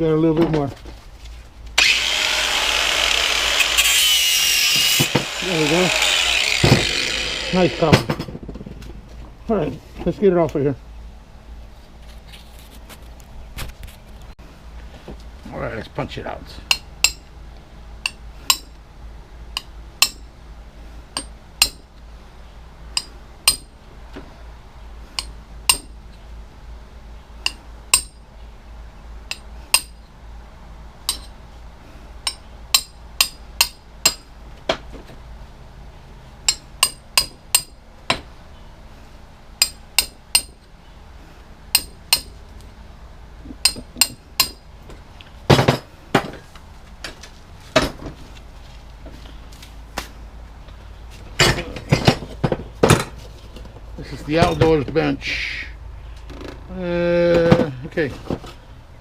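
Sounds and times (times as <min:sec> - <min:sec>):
hammer striking metal punch: 0:18.0 - 0:18.8, 0:19.6 - 0:20.3, 0:21.2 - 0:21.9, 0:23.0 - 0:23.7, 0:25.2 - 0:26.0, 0:27.4 - 0:28.2, 0:29.3 - 0:30.0, 0:31.1 - 0:31.3, 0:32.3 - 0:34.3, 0:36.5 - 0:38.2, 0:39.6 - 0:40.6, 0:41.7 - 0:42.3, 0:43.6 - 0:44.6.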